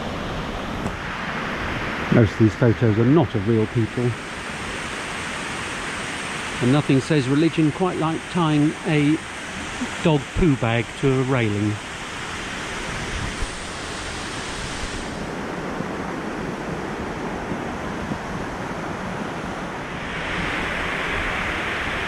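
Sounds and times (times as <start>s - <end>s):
small waterfall rushing: 0.0s - 15.4s, 19.2s - 22.0s.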